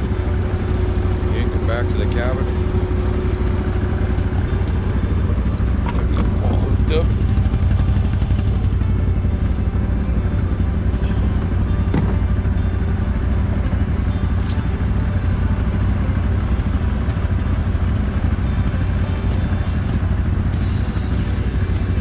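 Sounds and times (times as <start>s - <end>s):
quad engine running: 0.0s - 22.0s.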